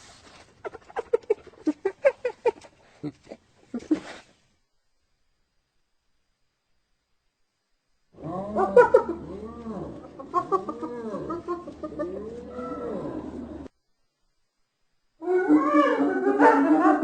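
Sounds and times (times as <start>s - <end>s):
hyena laughing: 0.6s - 4.3s, 8.2s - 13.7s.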